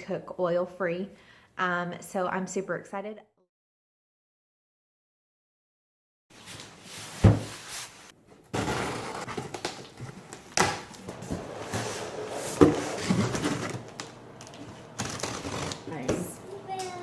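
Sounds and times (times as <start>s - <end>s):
packaging rustling and scraping: 6.4s - 16.1s.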